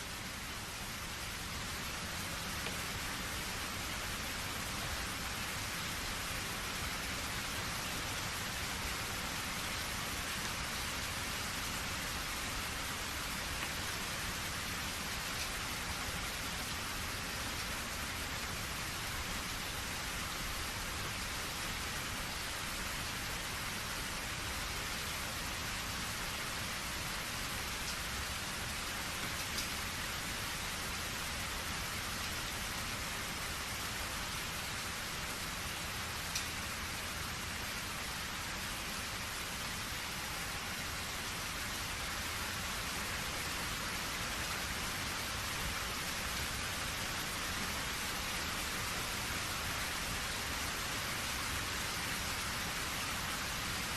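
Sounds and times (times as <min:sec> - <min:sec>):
rain falling: 0:00.0 - 0:53.9.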